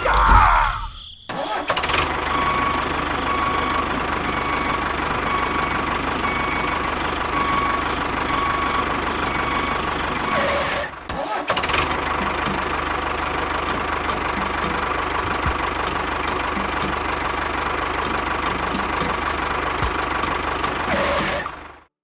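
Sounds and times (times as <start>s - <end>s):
small engine idling: 1.6s - 21.8s.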